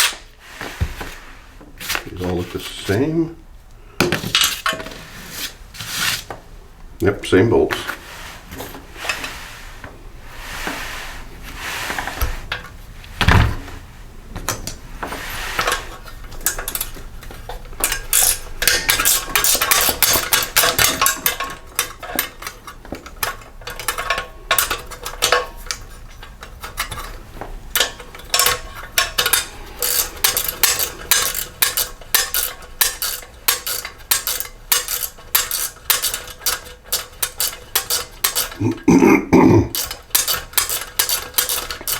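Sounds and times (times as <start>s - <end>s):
thump on metal: 13.2s - 13.7s
socket wrench metallic clicking: 16.4s - 27.1s, 27.7s - 38.6s, 39.7s - 41.9s.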